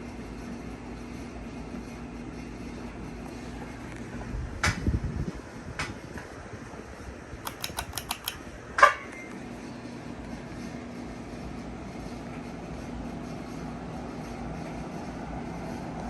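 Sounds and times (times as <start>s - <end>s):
ceiling fan motor hum: 0.0s - 16.0s
sharp clicks and knocks: 7.4s - 8.4s.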